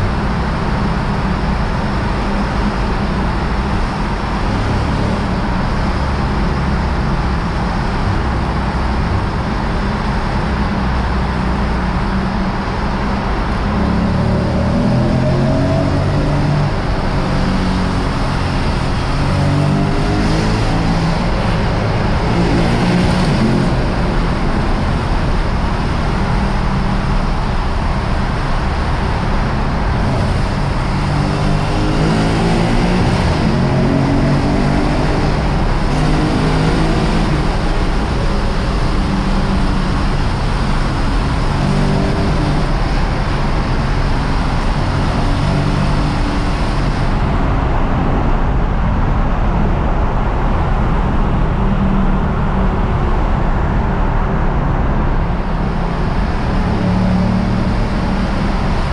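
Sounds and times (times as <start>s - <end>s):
car engine revving: 0.0s - 58.9s
tyre and road noise: 0.0s - 58.9s.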